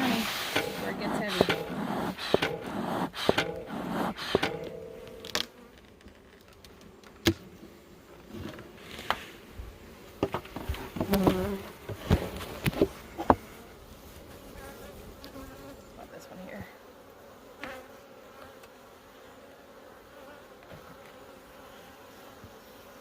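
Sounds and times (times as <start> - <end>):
honeybees buzzing: 0.0 - 5.9, 9.3 - 23.0
sharp clicks and knocks: 0.5 - 7.4.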